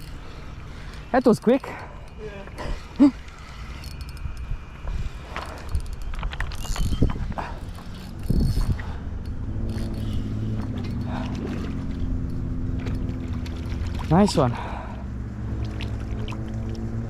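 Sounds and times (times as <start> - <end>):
reel whirring: 0.0 - 14.9
fishing reel clicks: 3.4 - 4.5, 5.3 - 7.1, 7.7 - 11.0.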